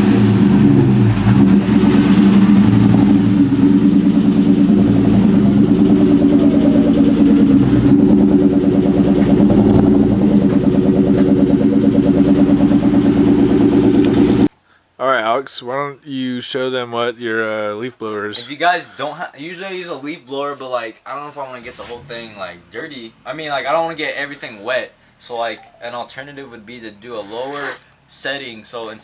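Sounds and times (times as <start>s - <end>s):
car engine idling: 0.0s - 14.5s.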